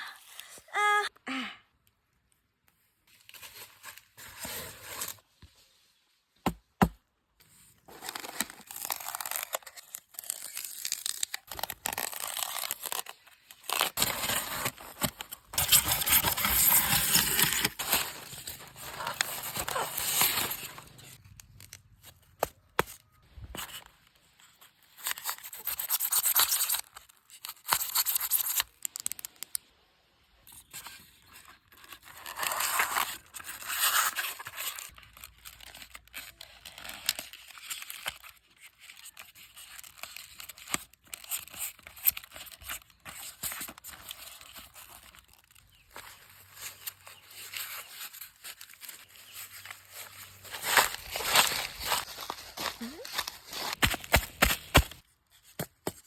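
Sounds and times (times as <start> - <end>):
material rustling and tearing: 7.9 - 21.2, 31.5 - 55.1.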